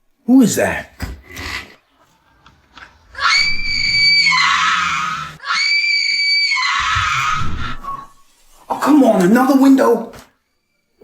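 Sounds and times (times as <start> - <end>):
person screaming: 3.2 - 8.0.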